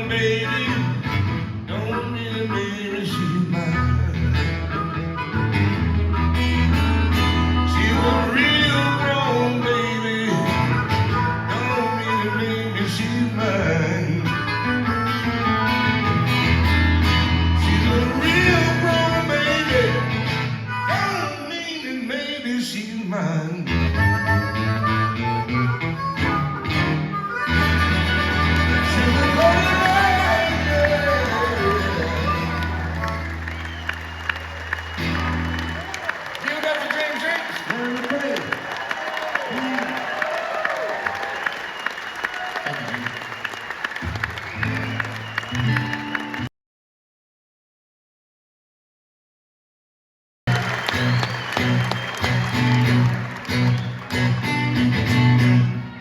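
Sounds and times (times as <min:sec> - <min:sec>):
guitar with bent notes: 0:00.0 - 0:21.2, 0:23.7 - 0:35.9, 0:50.5 - 0:56.0
acoustic blues band playing: 0:00.0 - 0:22.7, 0:23.3 - 0:36.2, 0:43.9 - 0:46.5, 0:50.5 - 0:56.0
acoustic guitar picking: 0:24.2 - 0:33.6, 0:51.0 - 0:55.9.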